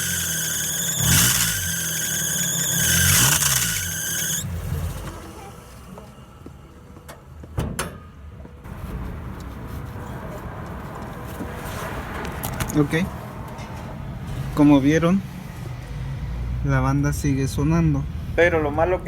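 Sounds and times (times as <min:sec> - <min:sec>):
drive belt squealing: 0:00.0 - 0:04.5
car engine idling: 0:00.0 - 0:06.2.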